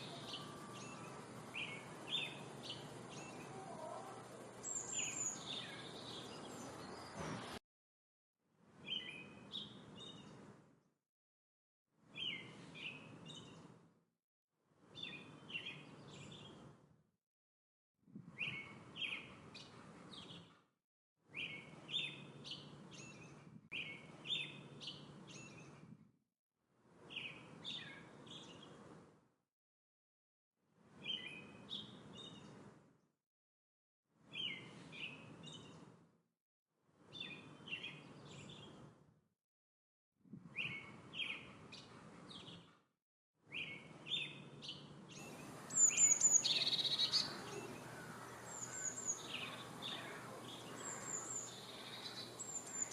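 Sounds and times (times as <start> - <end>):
outdoor background noise: 0.0 - 7.6, 43.6 - 52.9
songbird chirping: 0.0 - 7.6, 45.2 - 52.9
high-pitched bird call: 45.2 - 52.9.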